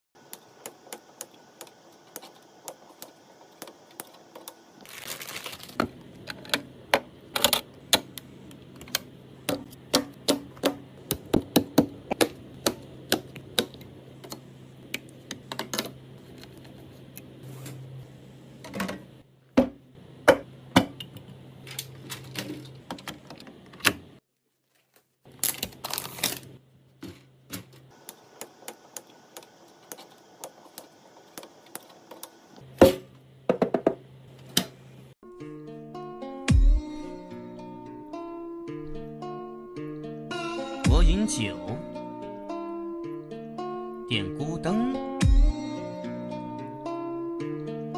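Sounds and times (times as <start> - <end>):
steady low hum: 5.8 - 24.2.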